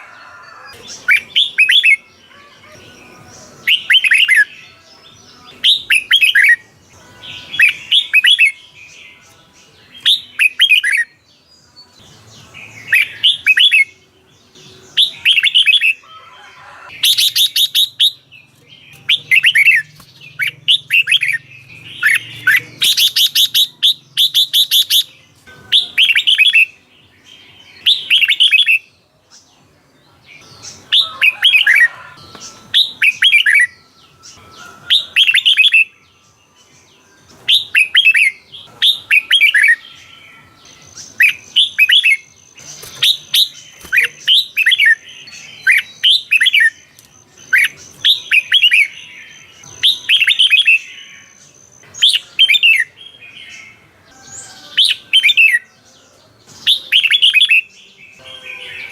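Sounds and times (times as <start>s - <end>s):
bird whistled song: 0.0s - 28.9s, 30.4s - 36.2s, 36.8s - 55.7s, 56.6s - 58.9s
bird high chattering: 19.1s - 25.1s.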